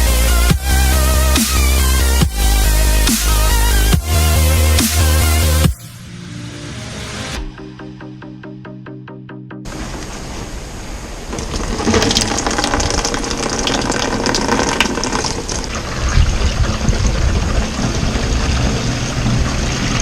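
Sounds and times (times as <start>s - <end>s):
low rumble: 0.0s - 13.2s.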